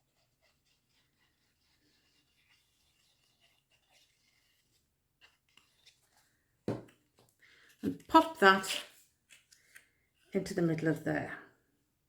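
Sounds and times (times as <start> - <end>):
glue applicator rubbing on card: 0.0 - 5.9.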